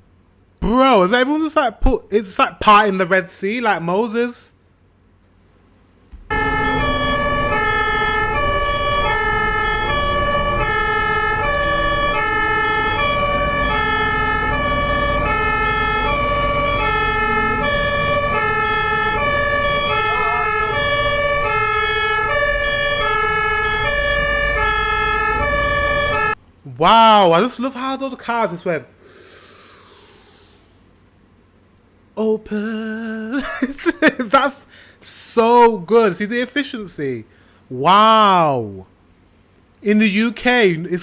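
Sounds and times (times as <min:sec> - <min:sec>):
ambulance two-tone siren: 0:06.3 - 0:26.4
low road rumble: 0:06.3 - 0:26.4.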